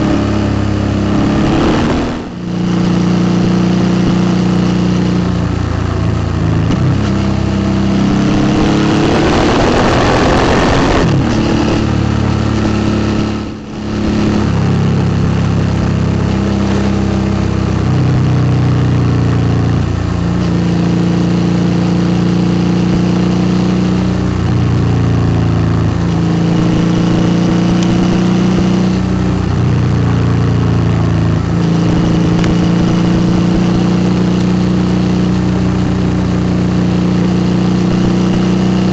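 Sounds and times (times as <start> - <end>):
motorcycle engine revving: 0.0 - 38.9
short rushing noise: 1.1 - 2.6.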